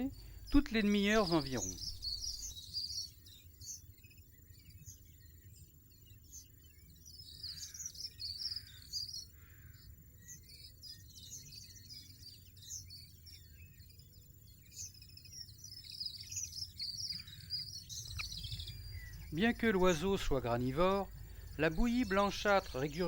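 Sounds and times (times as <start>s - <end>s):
finches twittering: 0.0s - 23.0s.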